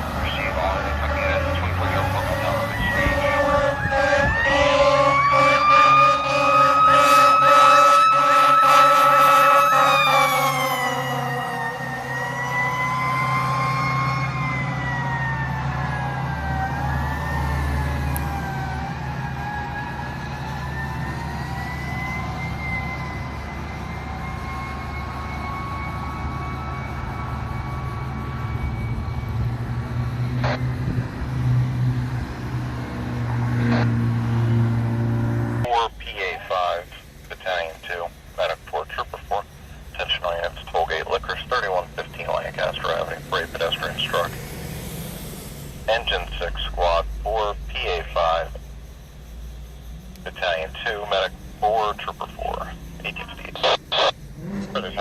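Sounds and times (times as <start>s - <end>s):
low engine rumble: 0.0s - 4.8s, 33.2s - 55.0s
fire truck siren: 0.0s - 48.9s, 50.2s - 55.0s
vehicle engine rumbling: 0.0s - 55.0s.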